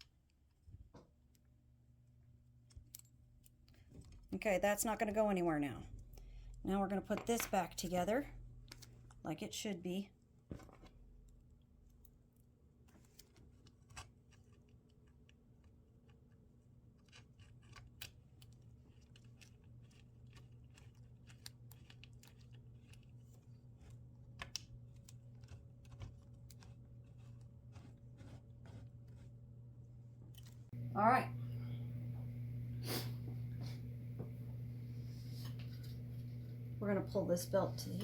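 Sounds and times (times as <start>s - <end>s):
low steady hum: 0.0s - 12.8s, 18.0s - 38.0s
small parts and screws clicking: 2.4s - 4.3s.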